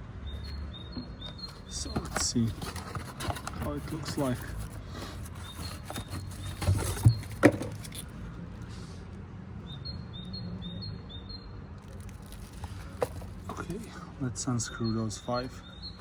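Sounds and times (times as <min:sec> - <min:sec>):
small bird chirping: 0:00.2 - 0:07.4.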